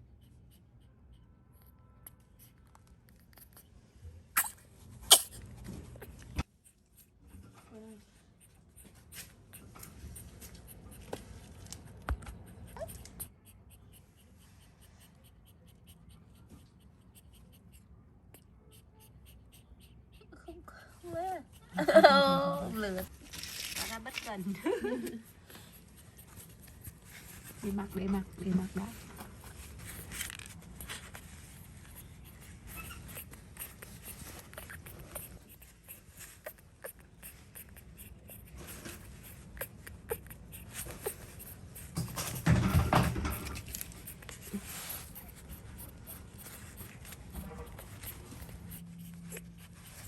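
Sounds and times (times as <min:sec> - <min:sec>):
rustling handling noises: 0:04.8 - 0:13.2, 0:21.0 - 0:50.0
faint high squeak: 0:29.8 - 0:43.7, 0:44.5 - 0:49.9.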